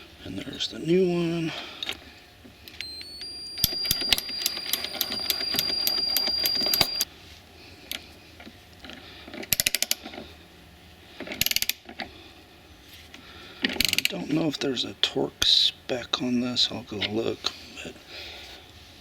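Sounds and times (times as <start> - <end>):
ratchet wrench clicking: 11.4 - 11.8.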